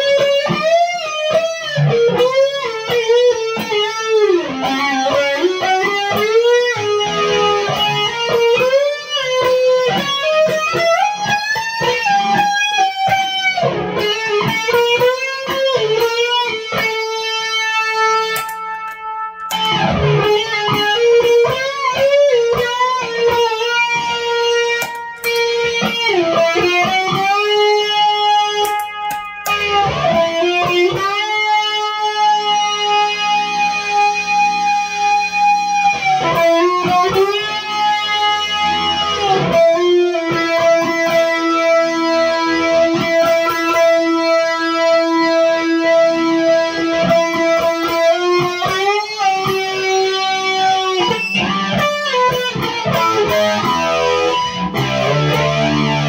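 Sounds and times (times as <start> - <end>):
electric guitar lead with bends: 0.0 - 56.0.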